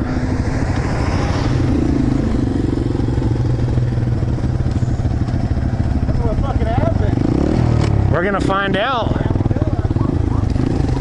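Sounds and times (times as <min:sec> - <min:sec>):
rushing noise: 0:00.0 - 0:05.2
motorcycle engine running: 0:00.0 - 0:11.0.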